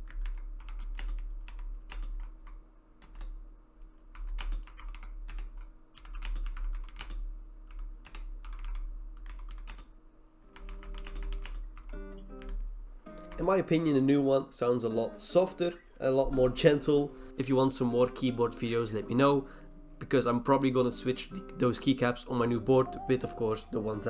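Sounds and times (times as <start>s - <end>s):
mechanical keyboard typing: 0.0s - 3.4s, 4.0s - 9.9s, 10.5s - 13.8s.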